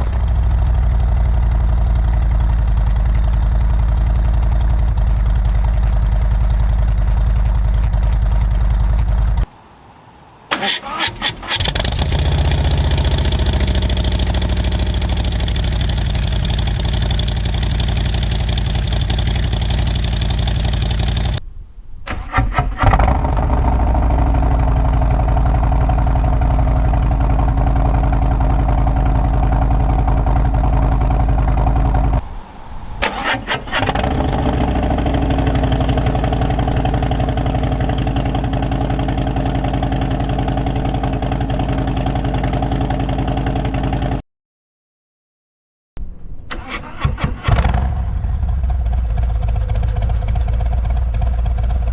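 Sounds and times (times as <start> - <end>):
motorcycle engine idling: 0.0 - 9.5, 11.5 - 21.4, 22.1 - 32.2, 33.9 - 44.2, 46.5 - 51.9
starter cranking: 10.5 - 20.4, 22.1 - 32.2, 33.0 - 39.0, 46.5 - 48.0.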